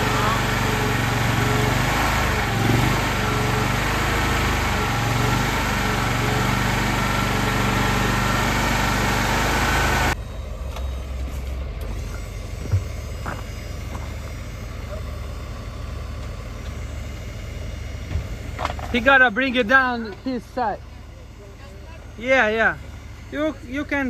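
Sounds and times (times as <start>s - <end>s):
truck engine running: 0.0s - 24.0s
thump: 18.1s - 18.9s.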